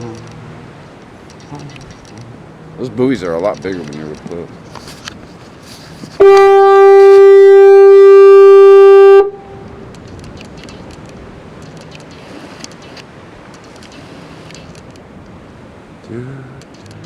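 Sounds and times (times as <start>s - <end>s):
fog horn honking: 6.2s - 9.8s.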